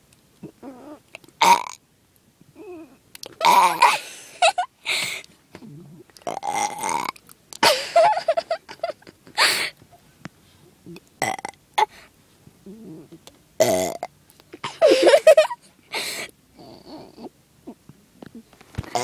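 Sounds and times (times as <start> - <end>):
girl burping: 3.4 - 4.0.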